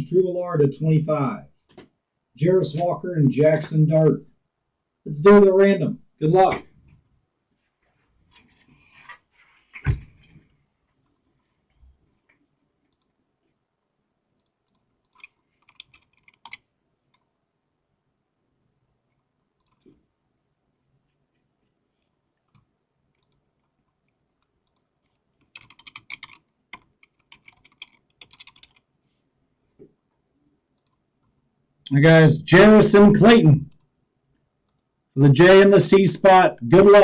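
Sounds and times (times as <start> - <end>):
computer keyboard typing: 12.9 - 13.2, 14.4 - 17.3, 19.6 - 19.9, 22.5 - 28.9, 30.8 - 31.0.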